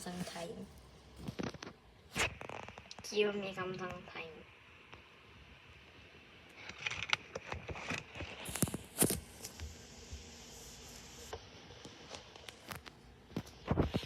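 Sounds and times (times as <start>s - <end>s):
light scratching and clicking: 6.5s - 9.7s.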